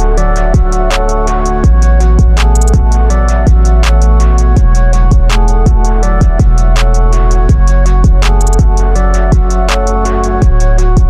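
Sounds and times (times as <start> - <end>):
hi-hat ticking: 0.0 - 11.0
sustained synth notes: 0.0 - 11.0
kick drum pounding: 0.5 - 0.9, 1.6 - 6.8, 7.5 - 9.7, 10.4 - 11.0.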